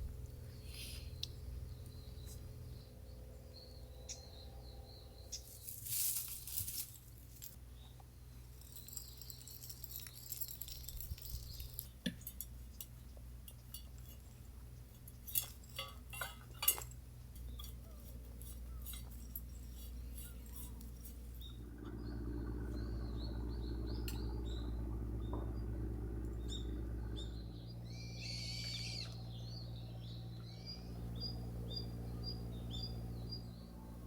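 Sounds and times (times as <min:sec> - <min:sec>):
small hard objects clinking: 0:05.4 - 0:21.6.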